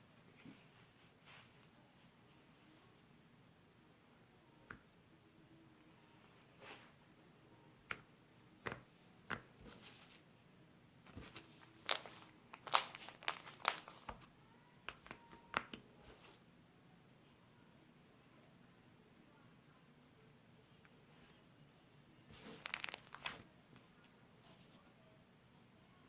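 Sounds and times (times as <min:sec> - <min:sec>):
slime clicking and crackling: 0:11.2 - 0:14.2.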